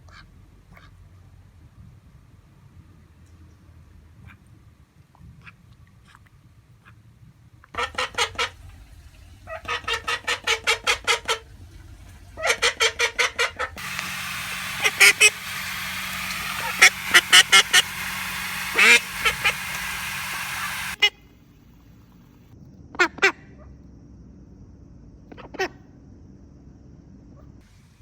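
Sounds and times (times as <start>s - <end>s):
duck quacking: 12.4s - 21.0s
steady hiss: 13.8s - 21.0s.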